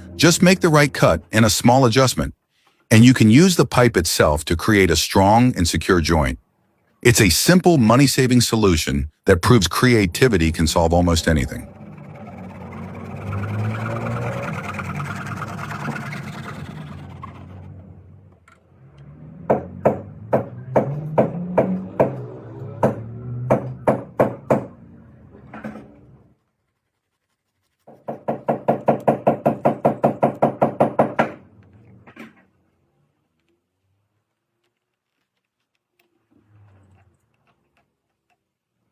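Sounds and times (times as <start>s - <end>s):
sharp knocks: 19.4s - 24.8s, 28.0s - 31.4s.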